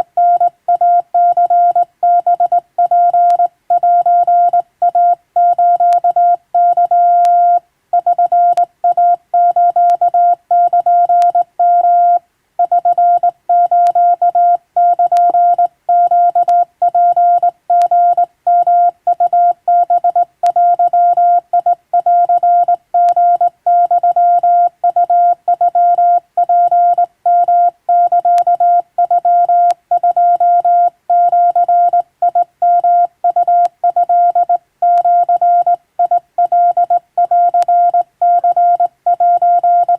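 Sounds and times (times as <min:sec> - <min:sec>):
morse code tone: 0:00.0 - 0:39.9.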